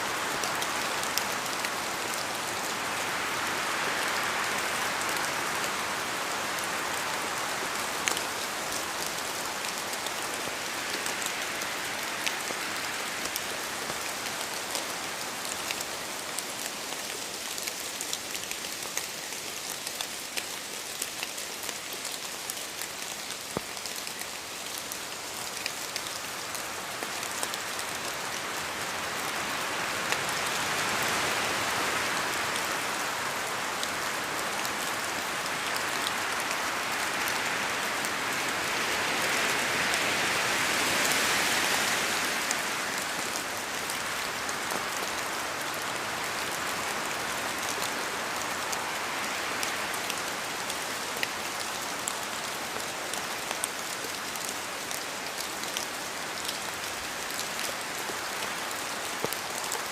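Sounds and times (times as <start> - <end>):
steady rain: 0.0 - 59.9
raindrops ticking close by: 4.1 - 38.6.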